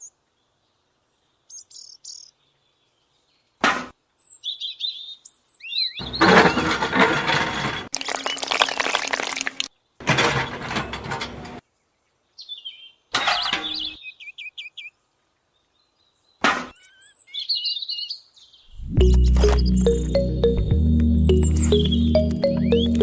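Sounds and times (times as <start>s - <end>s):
small birds chirping: 0.0s - 3.6s, 4.2s - 6.2s, 7.9s - 10.0s, 11.6s - 20.5s.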